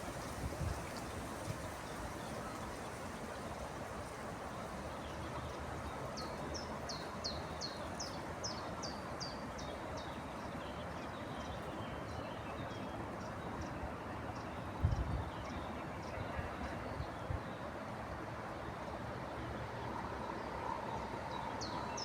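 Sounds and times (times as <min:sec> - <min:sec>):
outdoor background hiss: 0:00.0 - 0:22.0.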